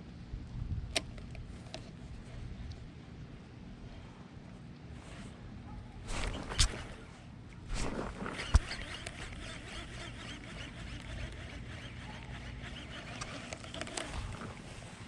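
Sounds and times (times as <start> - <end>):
fishing reel ticking: 6.1 - 7.0, 7.7 - 14.7
fishing rod swish: 6.1 - 7.1, 7.7 - 15.0
reel click: 6.1 - 7.1, 7.7 - 14.9.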